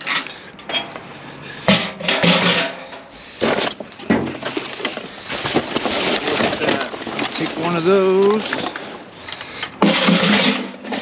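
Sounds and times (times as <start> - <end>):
junk clattering and rustling: 0.0 - 11.0.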